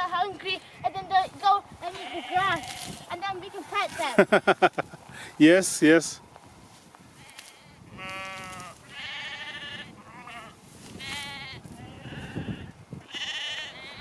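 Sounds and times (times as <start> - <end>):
sheep bleating: 1.8 - 4.2, 7.2 - 14.0.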